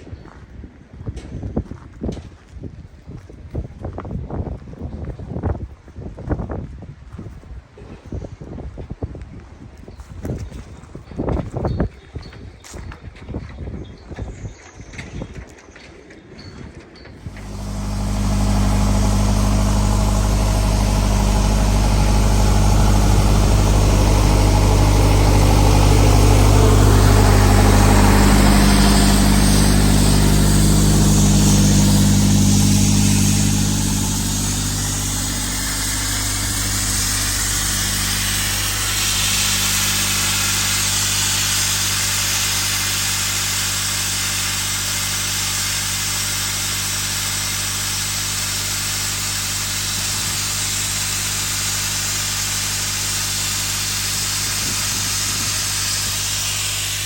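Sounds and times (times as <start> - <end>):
compressor engine running: 17.2 - 57.0
blast nozzle hiss: 17.3 - 57.0.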